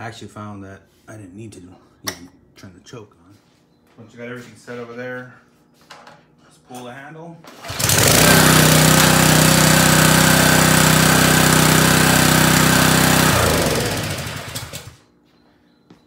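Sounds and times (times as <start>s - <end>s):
pressure washer engine running: 7.5s - 15.0s.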